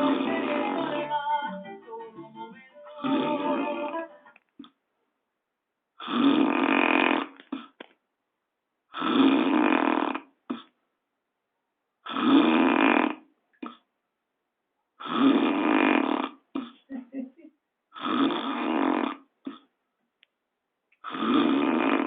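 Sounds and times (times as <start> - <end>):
person snoring heavily: 0.0 - 0.9, 3.0 - 4.0, 6.0 - 7.8, 8.9 - 10.7, 12.0 - 13.8, 15.0 - 16.8, 18.0 - 19.7, 21.0 - 22.0.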